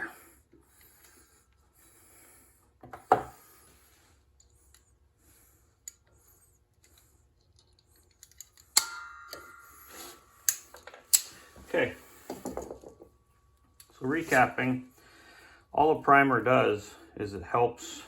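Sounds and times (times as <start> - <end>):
sharp metallic knocks: 8.8 - 11.3.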